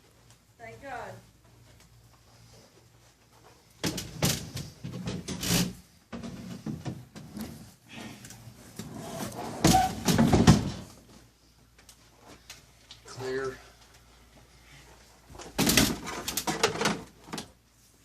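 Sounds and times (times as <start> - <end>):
air conditioner unit clunking: 3.7 - 7.6, 9.5 - 11.1.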